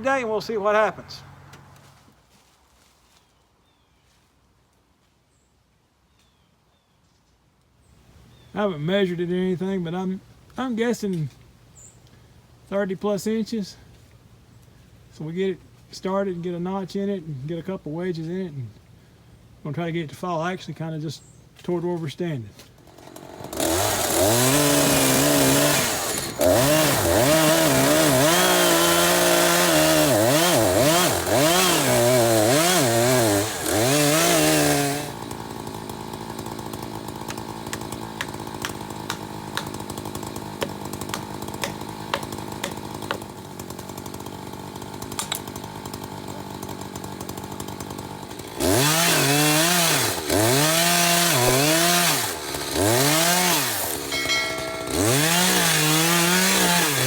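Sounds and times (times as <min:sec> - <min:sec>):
chainsaw cutting tree trunk: 0:22.6 - 0:57.0.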